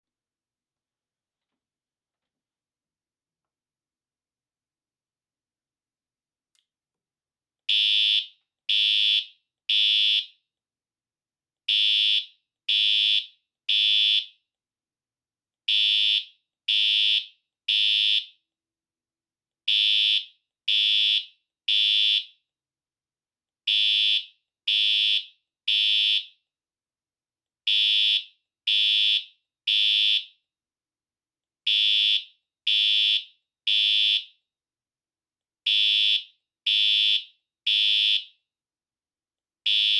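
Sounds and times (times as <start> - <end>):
fire alarm horn blasts: 35.7 - 38.2, 39.7 - 39.9.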